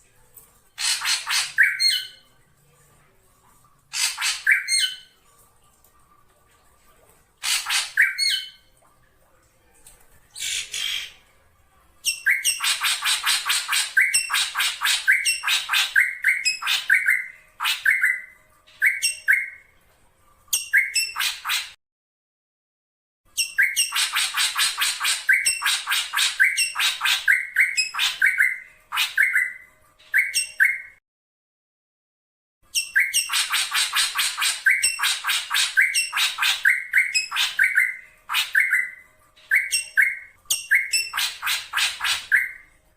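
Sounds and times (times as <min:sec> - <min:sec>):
bird harsh chattering calls: 0:00.8 - 0:02.1, 0:03.9 - 0:05.0, 0:07.4 - 0:08.4, 0:12.1 - 0:18.2.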